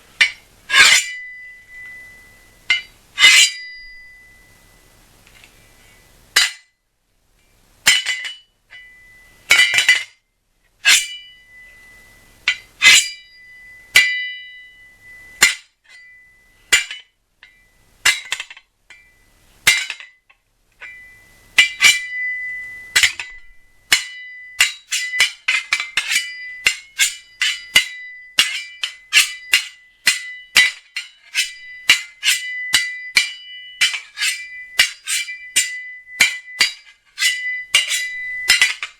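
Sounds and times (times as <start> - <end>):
knife blades clashing: 0.2 - 4.3, 7.9 - 10.1, 10.8 - 11.8, 12.5 - 14.6, 19.7 - 20.1, 20.8 - 38.9.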